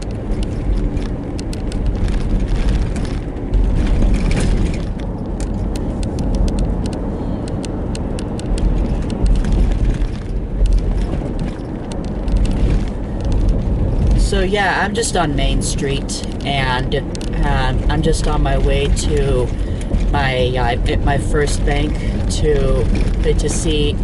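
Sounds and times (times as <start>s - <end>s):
small rattling clicks: 0.0s - 14.2s, 16.2s - 20.2s
road and engine rumble: 0.0s - 24.0s.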